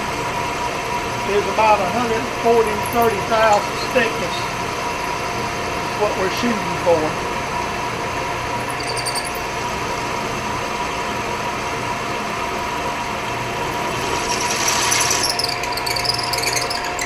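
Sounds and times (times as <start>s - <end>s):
drill bit squealing: 0.0s - 7.3s, 8.5s - 10.1s, 13.2s - 17.0s
milling machine humming: 0.0s - 17.0s.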